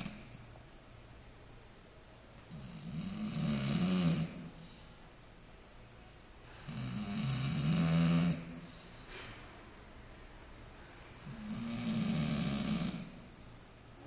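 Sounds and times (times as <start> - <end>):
man snoring: 2.5 - 4.6, 6.6 - 8.8, 11.2 - 13.3.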